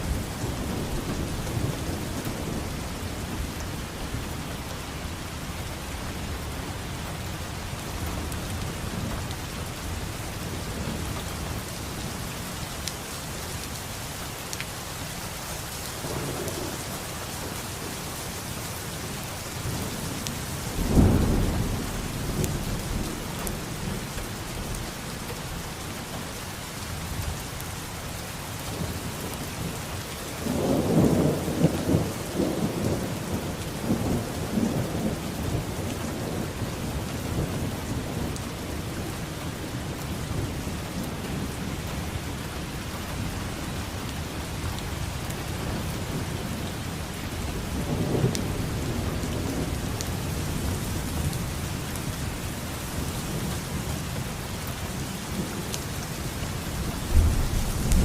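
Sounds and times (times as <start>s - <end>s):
steady rain: 0.0s - 58.0s
thunder rumbling: 20.7s - 25.0s, 56.8s - 58.0s.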